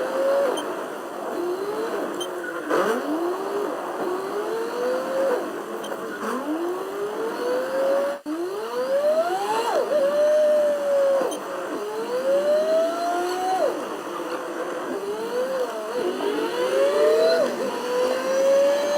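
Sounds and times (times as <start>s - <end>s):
car accelerating through gears: 14.9s - 18.9s.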